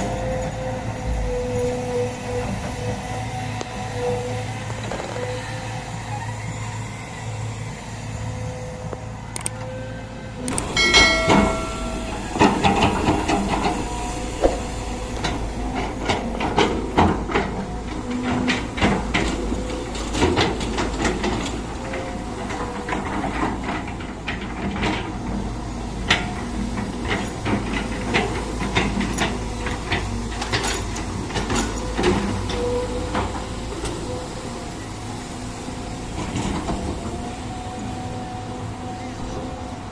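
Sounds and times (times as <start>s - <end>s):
low motor hum: 0.0s - 39.6s
excavator bucket knocking and scraping: 10.6s - 34.2s.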